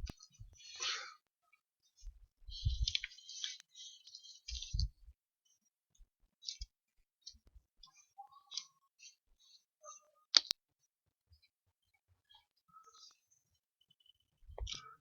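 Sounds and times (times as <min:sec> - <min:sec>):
faint scattered clicks: 0:06.4 - 0:09.2, 0:10.3 - 0:10.6, 0:14.6 - 0:15.0.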